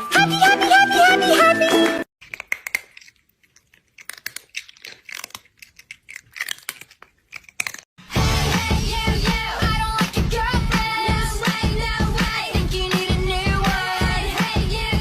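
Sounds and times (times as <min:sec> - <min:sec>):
loud background music: 0:08.0 - 0:15.0.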